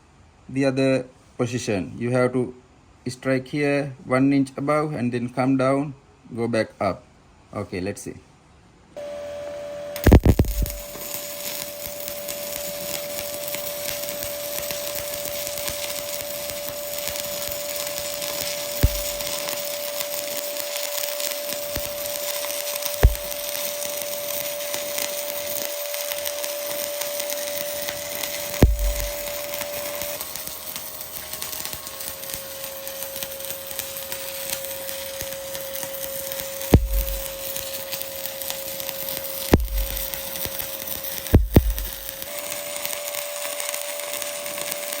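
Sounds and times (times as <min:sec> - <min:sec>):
steady tone: 0:09.0 - 0:19.6, 0:23.0 - 0:23.5, 0:28.4 - 0:30.1, 0:36.8 - 0:37.5, 0:39.6 - 0:40.2, 0:41.4 - 0:42.1
welding arc crackling: 0:10.0 - 0:45.0.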